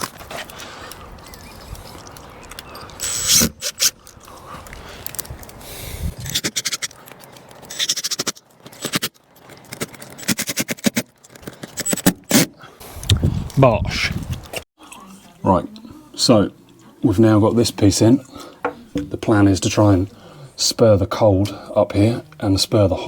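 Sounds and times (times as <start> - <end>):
tools clicking and scraping on pipe: 0.0 - 5.6, 6.2 - 12.4.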